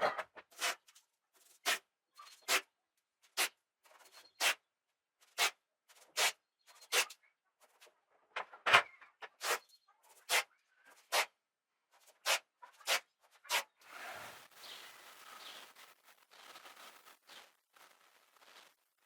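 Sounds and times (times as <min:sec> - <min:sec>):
rubbing or scraping strokes: 0:12.0 - 0:18.7.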